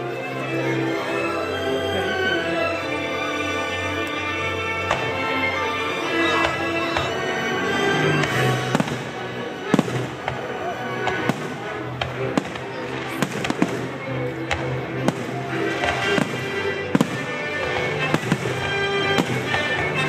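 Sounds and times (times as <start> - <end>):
fireworks bangs: 8.2 - 20.0.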